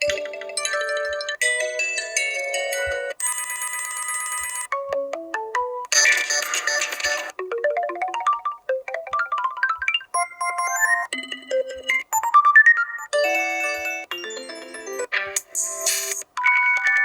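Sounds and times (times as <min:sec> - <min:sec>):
phone ringtone melodies: 0:00.0 - 0:17.0.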